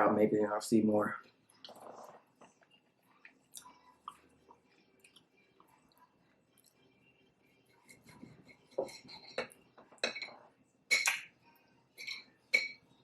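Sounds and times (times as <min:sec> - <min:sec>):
utensils clinking on a dish: 0:07.9 - 0:11.2, 0:12.0 - 0:12.9.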